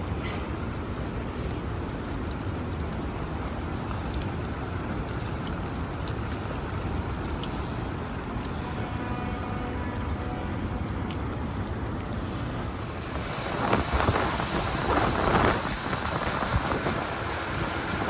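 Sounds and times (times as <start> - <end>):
drip ticks: 0.0 - 12.6
heavy rain: 0.0 - 18.0
running water: 0.1 - 18.0.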